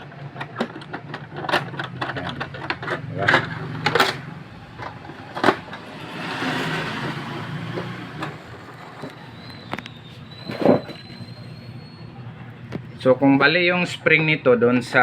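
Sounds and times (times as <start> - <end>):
printer roller whirring: 0.0 - 12.0.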